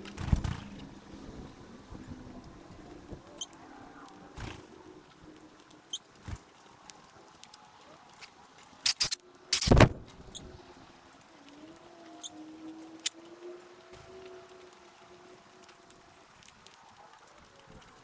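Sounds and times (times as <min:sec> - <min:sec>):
loud harsh bird bursts: 0:08.9 - 0:09.9.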